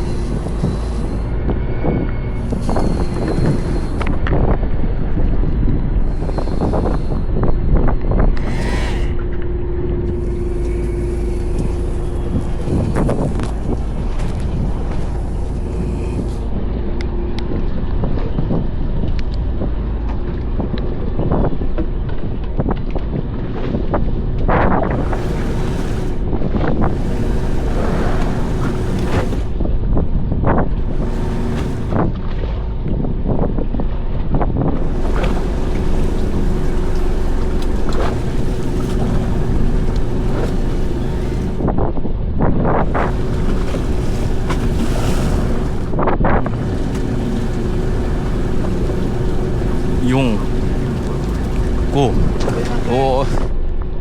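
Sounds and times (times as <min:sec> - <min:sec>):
boat engine humming: 0:00.0 - 0:54.0
wind on microphone: 0:00.0 - 0:54.0.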